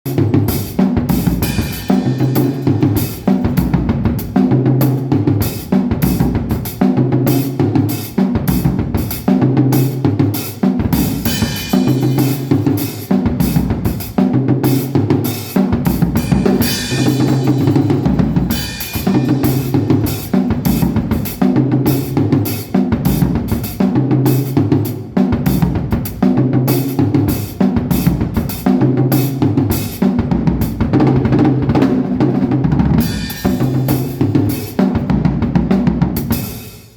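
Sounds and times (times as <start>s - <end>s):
cymbals: 0.1s - 24.6s, 32.9s - 35.0s
snare and bass drum strokes: 0.1s - 36.9s.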